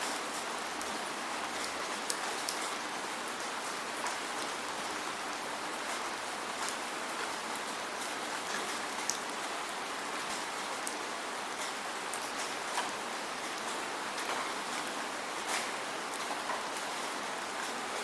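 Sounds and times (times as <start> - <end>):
steady rain hiss: 0.0 - 18.0
raindrops ticking: 5.3 - 17.8.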